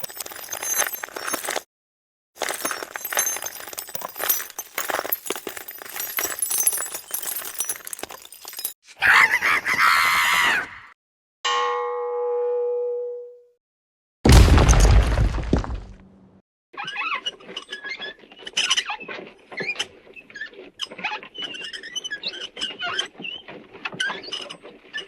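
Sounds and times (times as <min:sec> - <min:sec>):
clattering and clinking: 0:00.0 - 0:01.6, 0:02.4 - 0:08.8.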